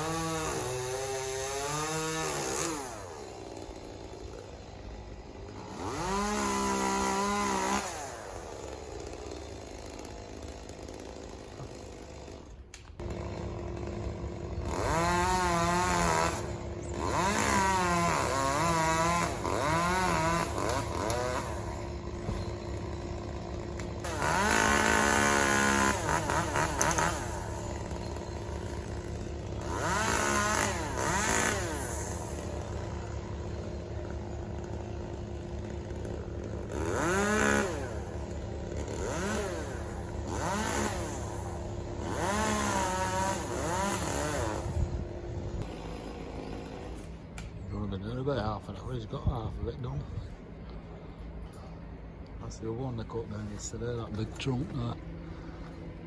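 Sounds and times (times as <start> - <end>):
chainsaw idling and revving: 0.0 - 49.9, 52.0 - 56.0.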